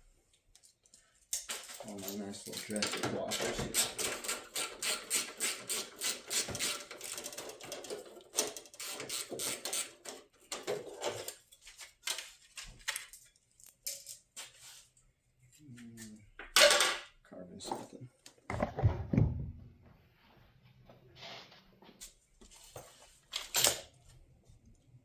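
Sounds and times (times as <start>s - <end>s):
hand tools clicking and knocking: 0.6s - 12.2s.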